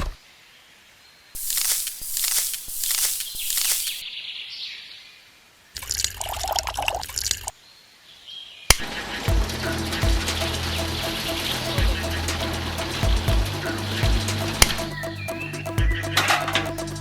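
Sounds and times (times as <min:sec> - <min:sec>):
liquid pouring and splashing: 0:01.4 - 0:04.0, 0:05.8 - 0:07.5
low hum: 0:08.8 - 0:17.0.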